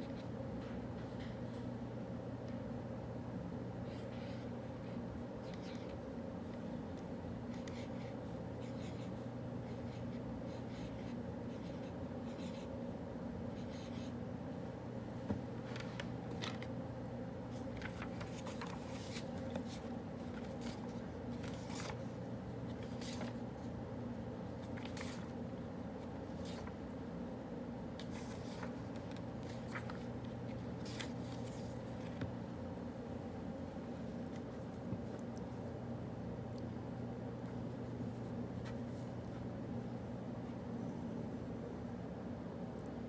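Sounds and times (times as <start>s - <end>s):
low room hum: 0.0s - 43.0s
pen scratching on paper: 7.5s - 12.8s, 13.5s - 14.2s.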